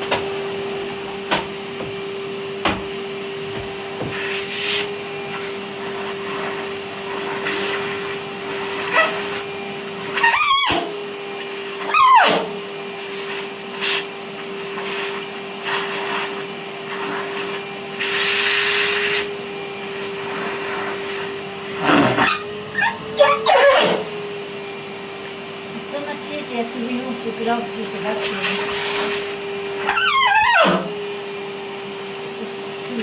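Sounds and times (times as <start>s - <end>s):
vacuum cleaner running: 0.0s - 33.0s.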